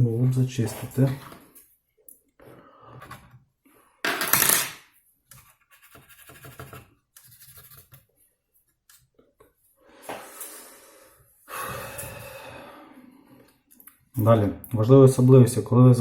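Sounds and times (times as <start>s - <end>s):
scratching and scraping on laptop: 2.5s - 3.4s, 5.3s - 9.2s.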